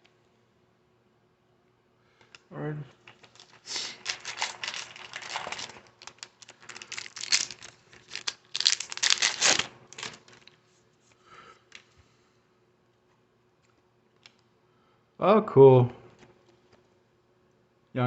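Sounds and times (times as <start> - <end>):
wrapper crinkling and tearing: 3.0 - 10.6.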